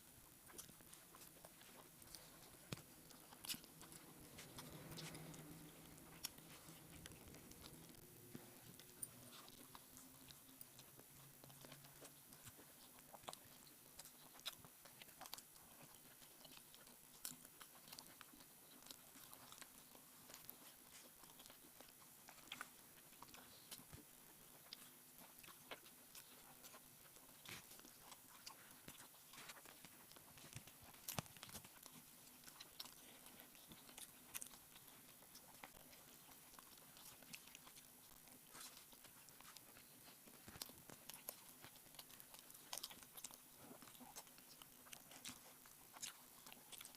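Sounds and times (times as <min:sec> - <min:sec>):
soft chewing: 0:00.0 - 0:46.9
small clicks and crunches: 0:26.2 - 0:46.9.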